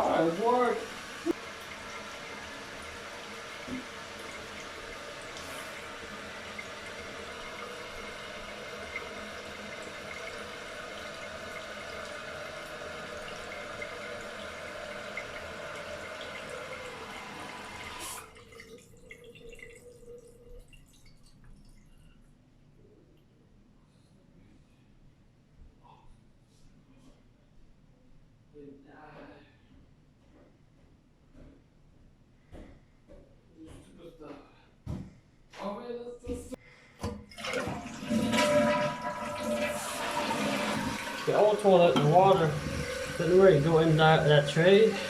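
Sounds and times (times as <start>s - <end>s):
toilet tank refilling water rush: 0.0s - 21.8s, 37.2s - 45.0s
faint water trickling: 0.0s - 22.5s, 37.3s - 45.0s.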